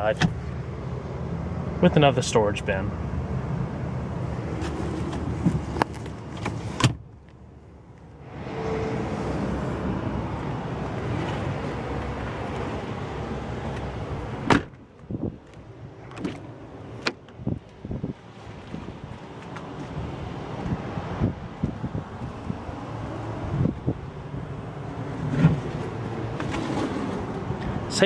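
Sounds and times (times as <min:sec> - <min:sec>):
clicks and knocks of truck cab fittings: 0:13.7 - 0:17.8.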